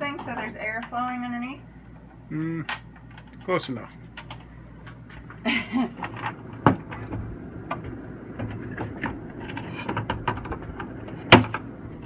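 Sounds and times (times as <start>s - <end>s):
steady low hum: 0.0s - 12.0s
plastic parts clicking and knocking: 4.2s - 5.0s, 6.0s - 12.0s.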